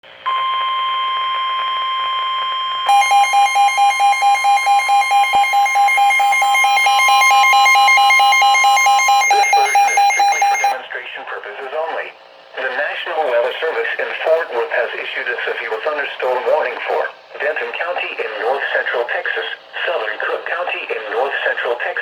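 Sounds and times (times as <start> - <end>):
harsh pulsing beep: 2.6 - 10.8
steady alert tone: 2.9 - 10.8.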